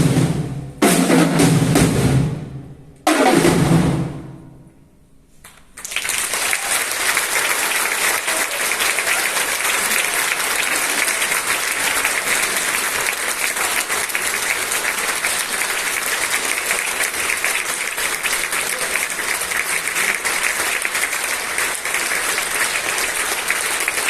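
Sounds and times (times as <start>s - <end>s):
audience applause: 5.8s - 24.0s.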